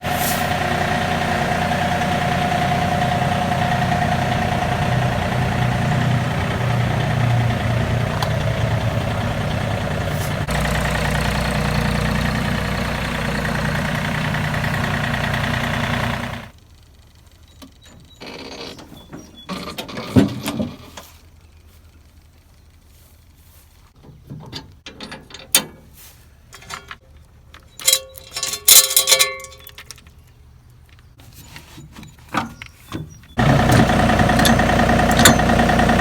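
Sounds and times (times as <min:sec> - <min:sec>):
tractor engine running: 0:00.0 - 0:18.2, 0:32.8 - 0:36.0.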